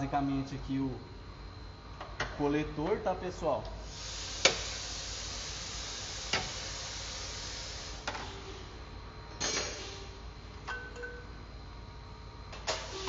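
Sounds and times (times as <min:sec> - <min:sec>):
steady hiss: 0:03.8 - 0:08.8.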